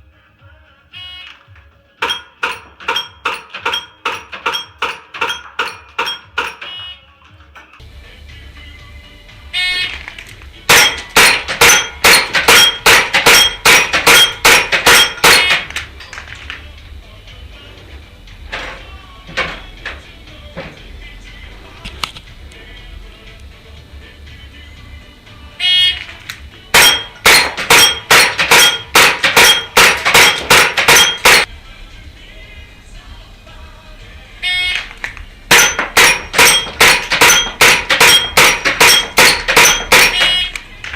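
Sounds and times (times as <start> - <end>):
bb clanging on steel plate: 2.0 - 7.8, 10.7 - 16.3, 26.8 - 31.5, 35.5 - 40.5.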